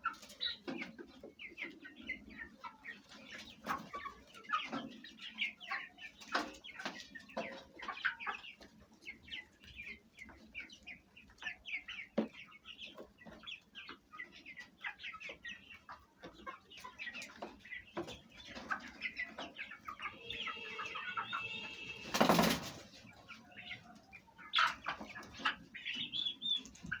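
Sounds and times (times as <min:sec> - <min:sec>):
chicks peeping: 0:00.0 - 0:27.0
hens clucking: 0:00.0 - 0:27.0
drawn-out high call: 0:20.1 - 0:22.4.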